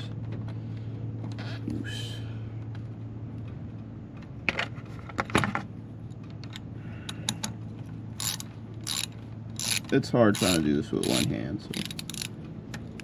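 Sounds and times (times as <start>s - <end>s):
steady low hum: 0.0s - 13.0s
metallic clicks of hand wrench: 8.2s - 12.4s.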